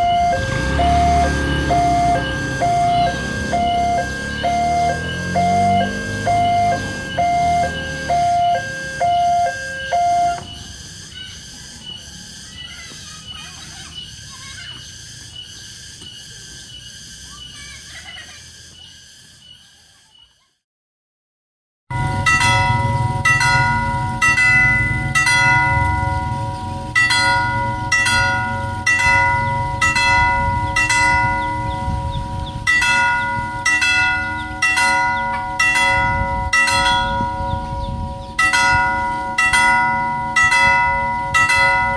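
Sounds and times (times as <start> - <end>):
electronic crossing bell striking: 0.0 - 11.3, 21.9 - 41.9
two-tone electronic alarm: 0.0 - 20.4, 21.9 - 41.9.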